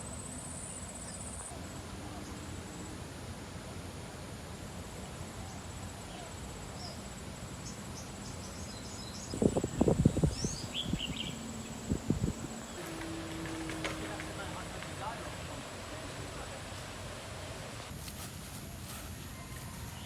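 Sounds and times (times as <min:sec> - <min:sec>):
background hiss: 0:00.0 - 0:20.0
birds chirping: 0:06.0 - 0:17.9
high insect buzz: 0:07.6 - 0:17.9.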